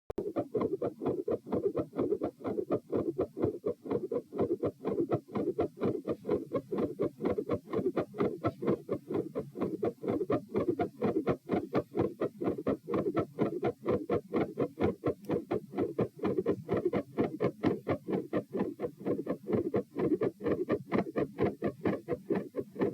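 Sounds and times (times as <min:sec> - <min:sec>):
fast heartbeat: 0:00.2 - 0:22.9.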